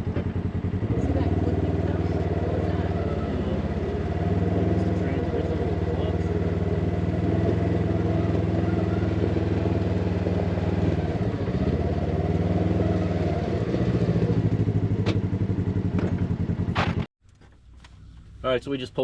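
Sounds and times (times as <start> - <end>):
engine running: 0.0 - 19.0.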